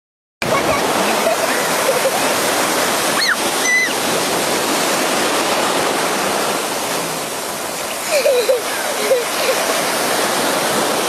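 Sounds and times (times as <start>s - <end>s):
ocean surf breaking: 0.4s - 11.0s
high-pitched cries: 3.2s - 4.0s.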